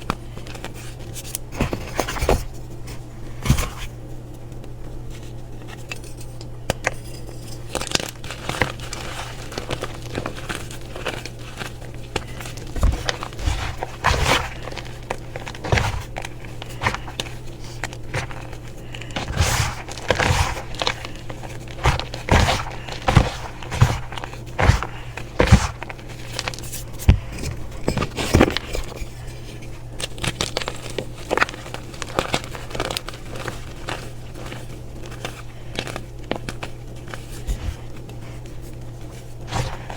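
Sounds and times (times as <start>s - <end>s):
steady low hum: 0.0s - 39.9s
dried material crunching by hand: 7.6s - 39.9s.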